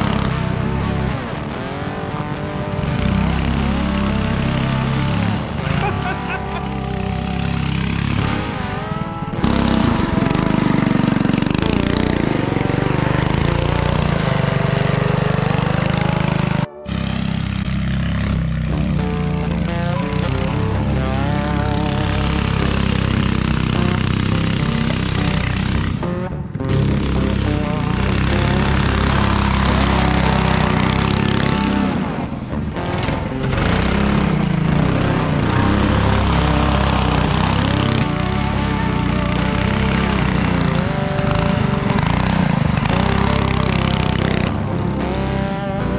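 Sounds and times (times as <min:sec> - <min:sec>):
go-kart engine running: 0:00.0 - 0:45.9.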